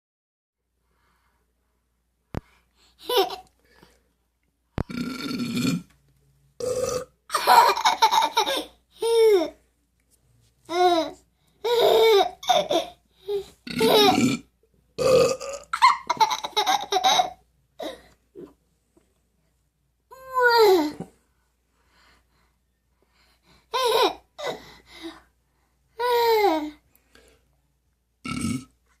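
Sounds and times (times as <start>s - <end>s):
baby laughing: 3.0s - 3.5s, 7.3s - 9.6s, 10.7s - 14.2s, 15.8s - 18.0s, 23.8s - 24.6s
burps: 4.8s - 5.9s, 6.6s - 7.2s, 13.7s - 15.8s, 28.2s - 28.8s.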